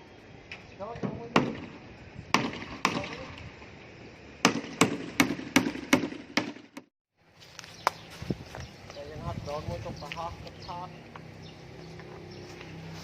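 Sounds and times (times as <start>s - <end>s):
hammer driving nails into wood: 4.4s - 6.9s.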